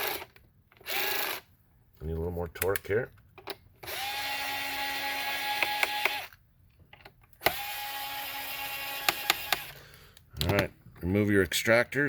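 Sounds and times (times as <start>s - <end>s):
electric screwdriver motor whining: 0.0s - 1.5s, 3.8s - 6.4s, 7.4s - 9.8s.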